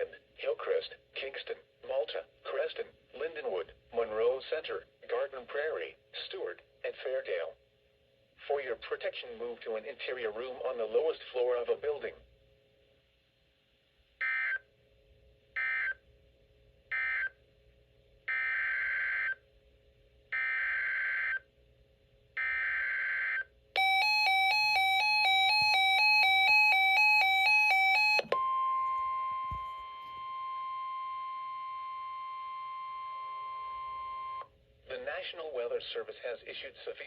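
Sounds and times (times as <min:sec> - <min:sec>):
steady warning alarm tone: 0:15.6 - 0:16.0, 0:16.9 - 0:17.4, 0:18.3 - 0:19.4, 0:20.4 - 0:21.4, 0:22.4 - 0:34.5.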